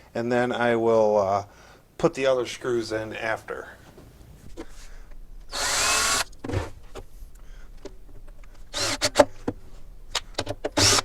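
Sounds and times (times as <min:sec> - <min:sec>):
sharp clicks and knocks: 0:03.9 - 0:11.0
drill rasping bursts: 0:05.5 - 0:06.7, 0:08.6 - 0:09.5, 0:10.7 - 0:11.0.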